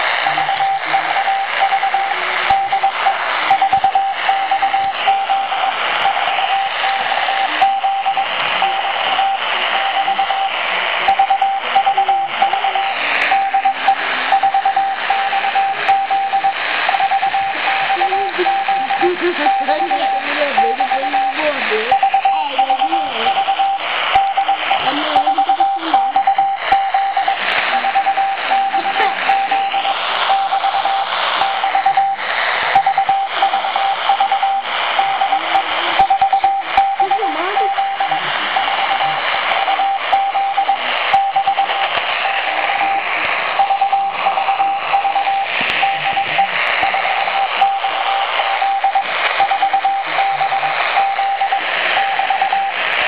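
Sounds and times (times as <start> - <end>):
faint wavering radio tones: 0.0 - 53.0
radio static hiss: 0.0 - 53.0
morse code tone: 0.2 - 41.8, 42.8 - 52.8.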